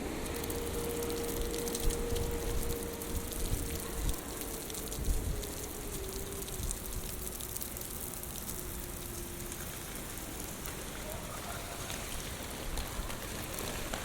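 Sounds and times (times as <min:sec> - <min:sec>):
heavy rain falling: 0:00.0 - 0:14.0.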